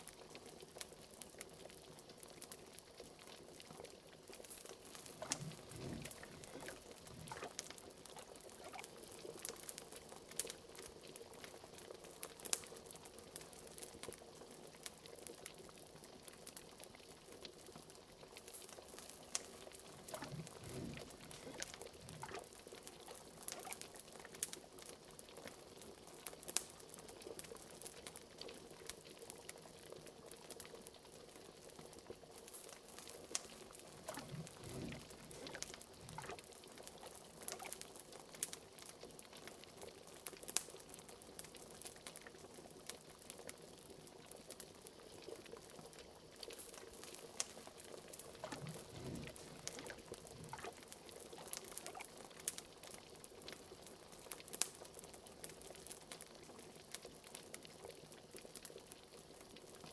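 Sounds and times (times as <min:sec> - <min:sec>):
liquid bubbling in a cauldron: 0:00.2 - 0:56.7
wood fire crackling: 0:04.3 - 0:08.8, 0:18.4 - 0:23.8, 0:32.4 - 0:37.8, 0:46.5 - 0:52.6.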